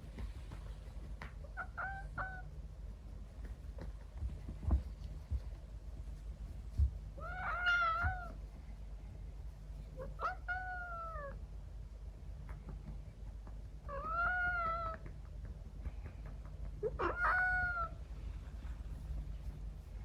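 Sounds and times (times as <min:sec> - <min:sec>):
cat meowing: 0:01.6 - 0:02.4, 0:07.2 - 0:08.4, 0:10.0 - 0:11.4, 0:13.9 - 0:15.0, 0:16.8 - 0:18.0
soft low thump: 0:03.8 - 0:07.1.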